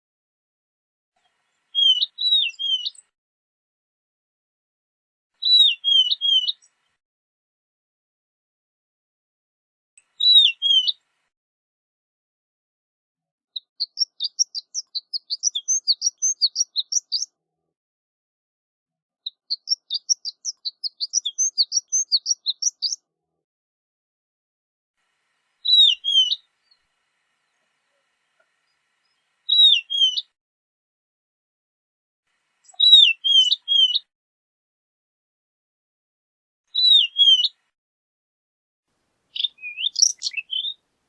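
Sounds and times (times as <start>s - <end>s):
bird call: 1.7s - 3.0s, 5.4s - 6.6s, 10.2s - 11.0s, 25.6s - 26.5s, 29.5s - 30.3s, 32.7s - 34.0s, 39.4s - 40.8s
bird singing rapid high notes: 13.8s - 17.3s, 19.5s - 23.0s, 25.6s - 26.5s, 39.4s - 40.8s.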